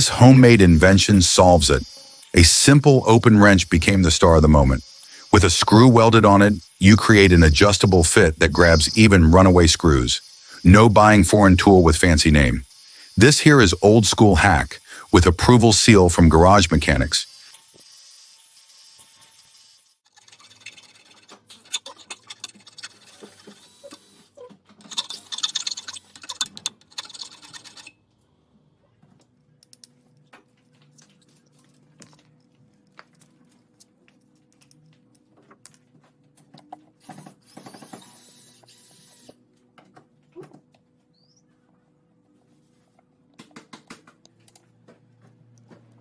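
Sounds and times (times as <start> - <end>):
hand tool clicking and scraping: 20.1 - 24.2, 24.8 - 28.0.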